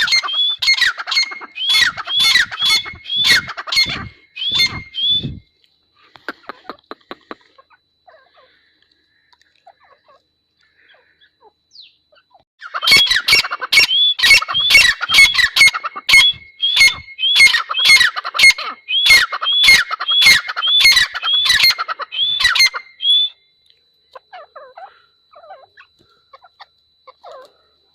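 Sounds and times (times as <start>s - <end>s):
francolin calling shrill notes: 0.0s - 5.4s, 10.8s - 23.4s.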